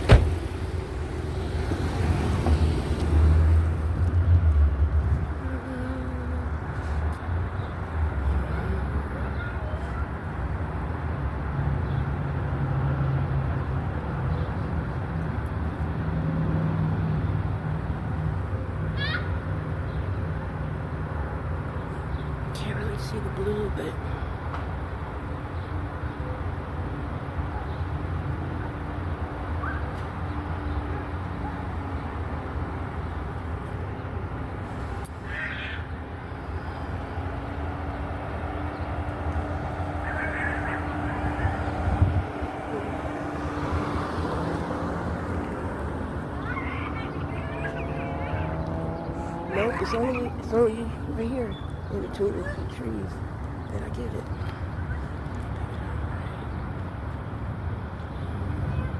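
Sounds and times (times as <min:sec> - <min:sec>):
rumbling background noise: 0:00.0 - 0:11.0, 0:33.1 - 0:58.9
bird calling: 0:35.1 - 0:36.9, 0:39.7 - 0:41.9, 0:46.3 - 0:52.7.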